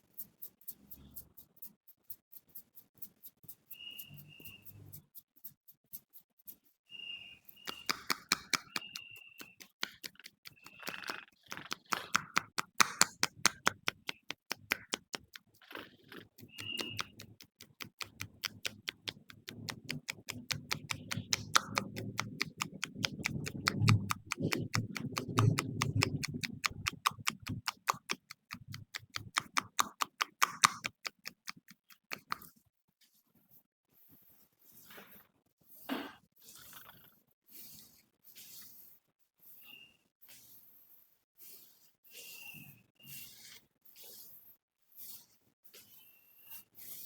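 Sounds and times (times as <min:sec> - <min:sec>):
hand slaps of head massage: 0:07.7 - 0:10.4, 0:11.5 - 0:15.2.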